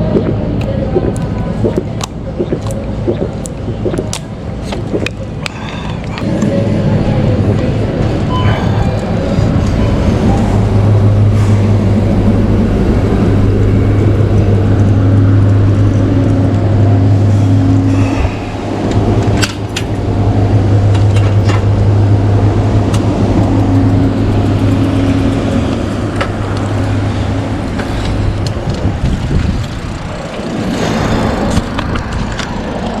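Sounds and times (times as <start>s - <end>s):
low engine-like hum: 0.0s - 33.0s
street noise: 0.0s - 33.0s.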